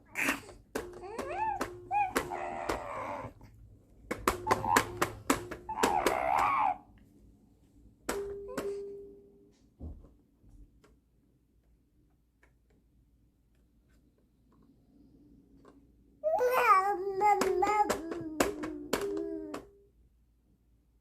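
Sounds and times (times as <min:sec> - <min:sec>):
baby vocalizing: 0:00.0 - 0:03.5.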